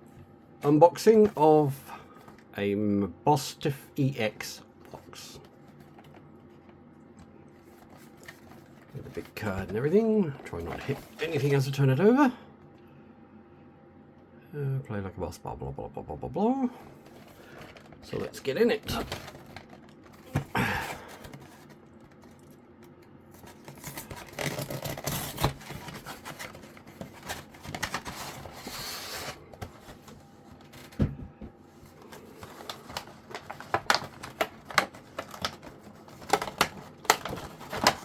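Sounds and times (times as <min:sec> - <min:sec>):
packaging tearing and rustling: 0:16.9 - 0:22.6, 0:23.3 - 0:31.0, 0:31.9 - 0:38.0.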